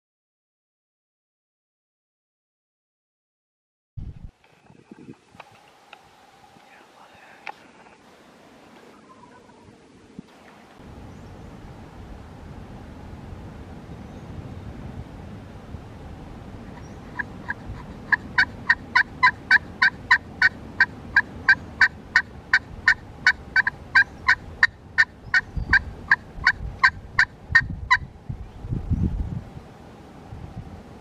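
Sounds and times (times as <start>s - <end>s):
wind rumbling on microphone: 4.0s - 31.0s
wild turkey yelping: 8.8s - 9.8s, 16.7s - 27.3s.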